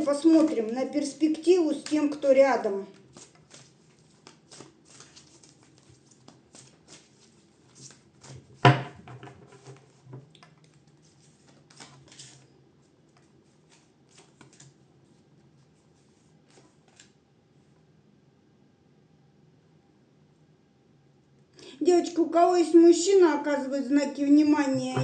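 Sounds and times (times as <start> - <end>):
cards shuffling: 1.7 - 2.2, 2.9 - 8.5, 9.5 - 12.5, 13.2 - 14.8
knock on table: 8.6 - 9.4.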